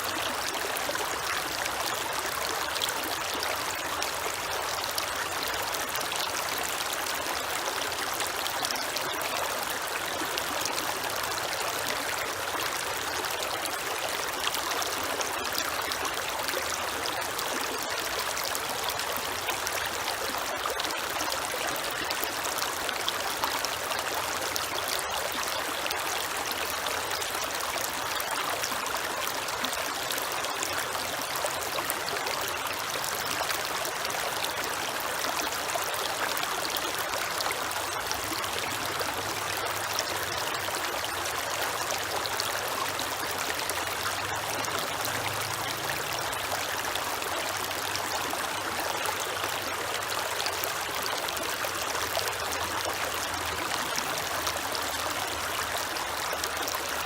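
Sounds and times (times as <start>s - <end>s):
creek water flowing: 0.0s - 57.0s.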